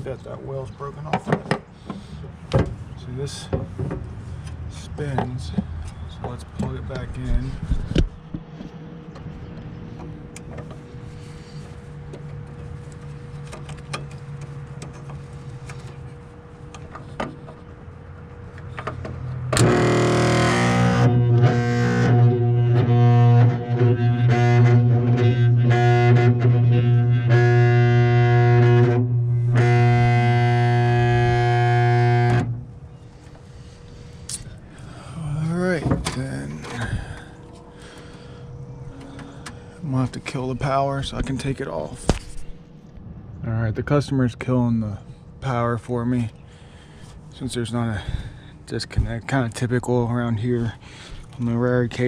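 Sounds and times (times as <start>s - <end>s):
quiet steady hum: 0.0s - 52.0s
loud electrical buzz: 7.1s - 43.2s.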